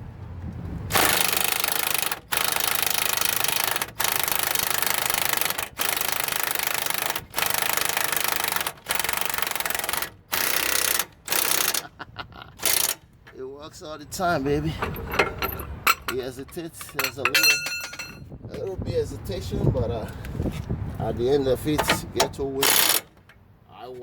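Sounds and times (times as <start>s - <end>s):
impact wrench hammering: 0.9s - 11.8s, 12.6s - 13.0s, 14.9s - 18.2s.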